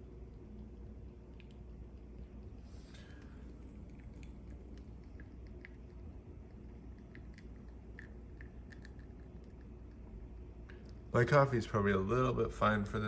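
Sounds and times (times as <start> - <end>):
steady low hum: 0.0 - 13.0
small crackles and ticks: 0.3 - 11.0.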